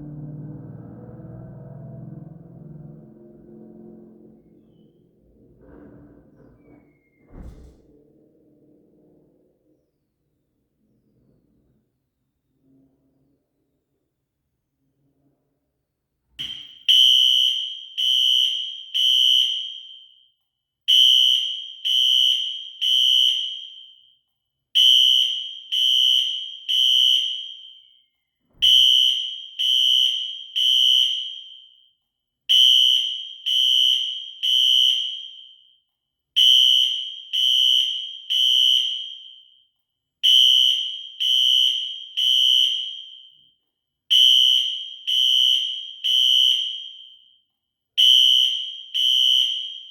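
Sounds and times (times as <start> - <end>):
low thump: 5.5 - 8.0
fire alarm tones: 16.4 - 47.4, 48.0 - 49.9.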